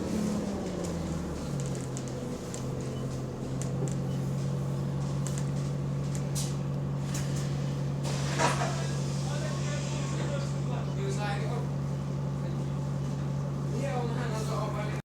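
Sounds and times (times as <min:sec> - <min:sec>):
bus engine droning: 0:00.0 - 0:15.0
light rattles and clicks: 0:00.6 - 0:06.6.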